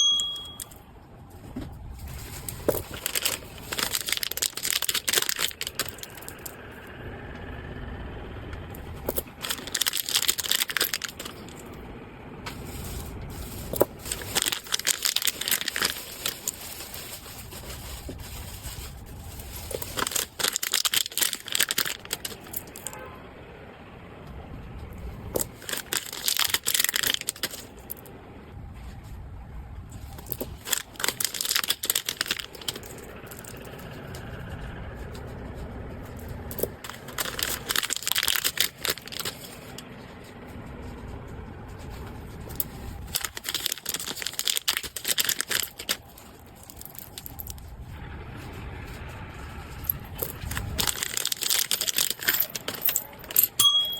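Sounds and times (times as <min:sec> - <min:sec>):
packaging crinkling and tearing: 0:01.9 - 0:06.6, 0:09.2 - 0:11.7, 0:12.5 - 0:22.9, 0:25.4 - 0:28.0, 0:30.0 - 0:34.2, 0:36.2 - 0:39.8, 0:42.5 - 0:47.6, 0:49.5 - 0:53.4.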